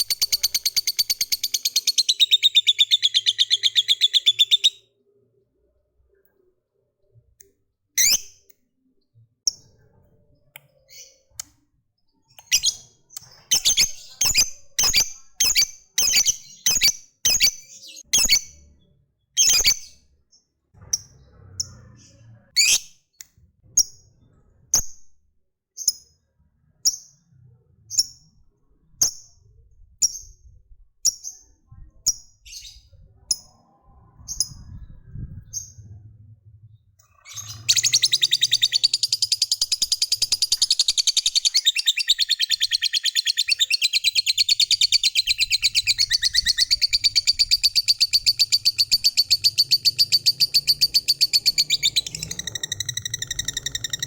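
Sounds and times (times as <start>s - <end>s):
lovebird chirping: 0.0s - 4.9s, 8.0s - 8.5s, 12.2s - 18.8s, 19.4s - 20.0s, 20.8s - 22.9s, 37.1s - 54.0s.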